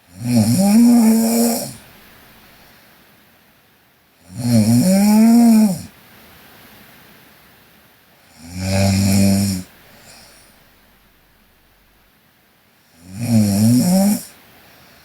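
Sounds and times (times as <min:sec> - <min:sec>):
woman snoring: 0:00.1 - 0:01.8, 0:04.3 - 0:05.9, 0:08.3 - 0:10.4, 0:13.0 - 0:14.3.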